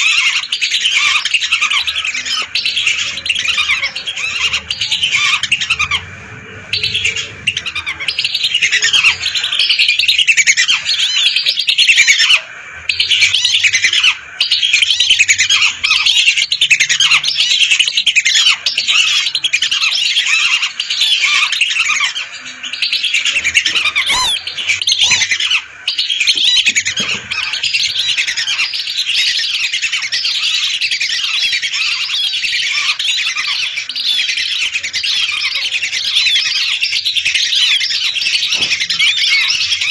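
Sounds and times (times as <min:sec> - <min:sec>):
flock of ducks whistling: 0:00.0 - 0:39.9.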